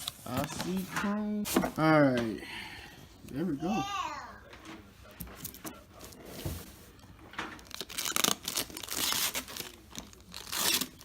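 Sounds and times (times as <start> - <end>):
plastic packaging rustling and ripping: 7.5 - 11.0.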